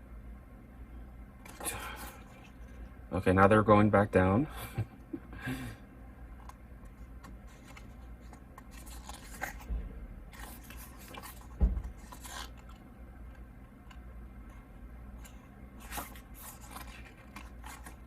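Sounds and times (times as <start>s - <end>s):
paper pages rustling: 7.2s - 9.7s, 10.3s - 12.8s, 15.2s - 18.0s
soft thump: 11.5s - 12.0s.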